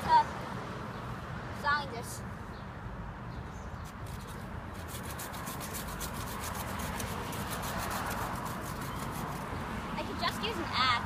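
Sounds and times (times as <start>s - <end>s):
hand saw cutting wood: 4.0s - 9.5s.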